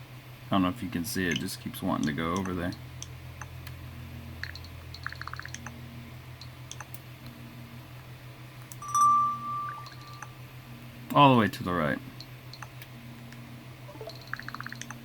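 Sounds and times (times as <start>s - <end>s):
low electrical hum: 0.0s - 15.0s
short electronic beep: 8.8s - 10.4s.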